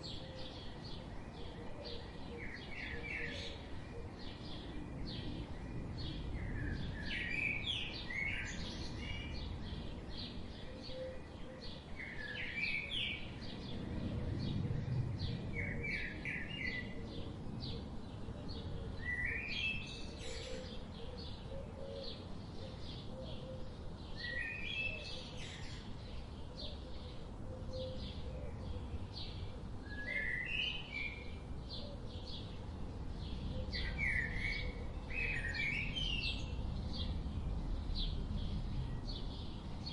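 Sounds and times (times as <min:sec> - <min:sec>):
bird song phrase: 0:17.6 - 0:32.6, 0:33.2 - 0:39.9.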